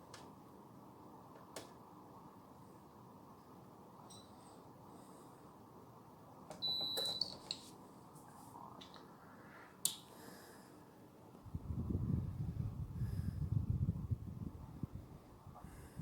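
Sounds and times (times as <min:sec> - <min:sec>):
faint steady hum: 0:00.0 - 0:16.0
heater control beep: 0:04.1 - 0:04.4, 0:06.5 - 0:07.4.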